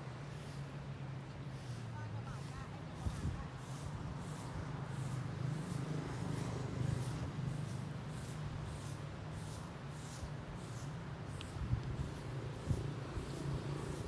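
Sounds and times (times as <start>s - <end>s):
wind rumble on microphone: 3.0s - 4.1s, 11.5s - 14.0s.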